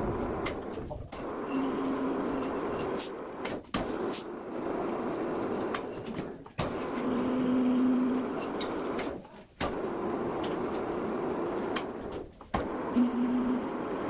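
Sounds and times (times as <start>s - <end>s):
steady hum: 0.0s - 14.0s
metal lathe running: 1.1s - 3.4s, 6.8s - 9.1s.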